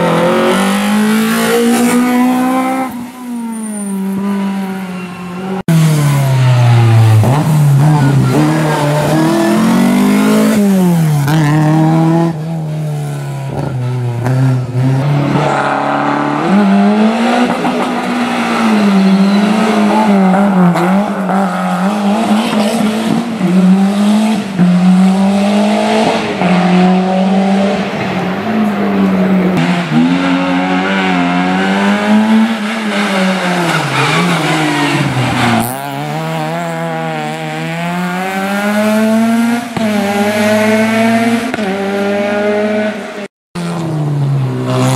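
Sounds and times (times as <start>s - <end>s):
rally car engine revving: 0.0s - 44.9s.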